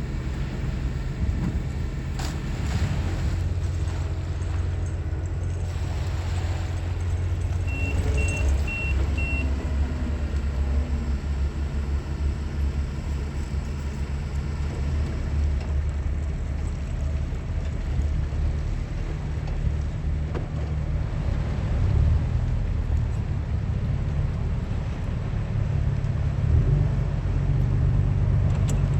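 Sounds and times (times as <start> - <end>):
heavy engine rumbling: 0.0 - 28.9
reversing alarm beeps: 7.6 - 9.8.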